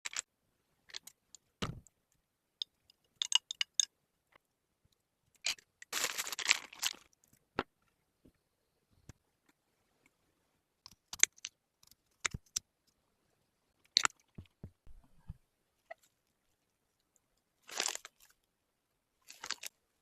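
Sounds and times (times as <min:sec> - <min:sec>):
dull thump: 0:01.6 - 0:01.9
objects clicking and clinking: 0:02.6 - 0:03.9.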